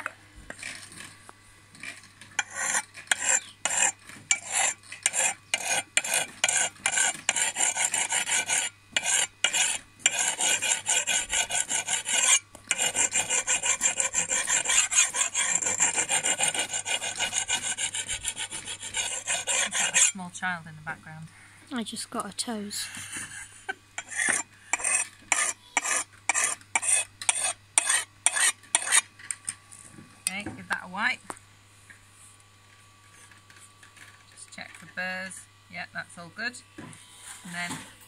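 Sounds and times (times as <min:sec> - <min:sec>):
sharpening stone scraping steel blade: 0:02.4 - 0:20.2, 0:24.0 - 0:29.0.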